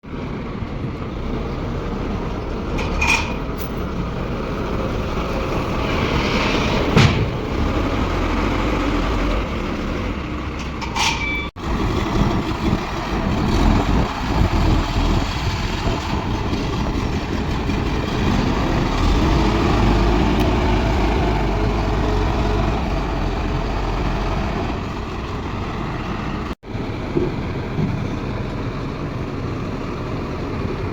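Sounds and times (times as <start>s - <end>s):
excavator diesel engine running: 11.6s - 30.9s.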